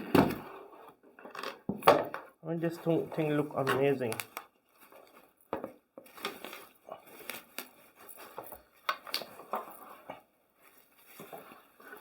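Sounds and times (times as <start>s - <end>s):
packaging rustling: 2.6s - 10.0s, 10.6s - 12.0s.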